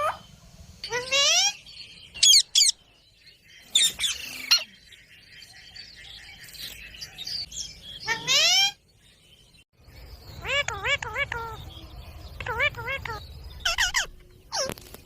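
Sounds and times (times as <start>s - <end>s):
parrot squawking: 8.0s - 8.8s, 10.4s - 11.6s, 12.4s - 14.7s.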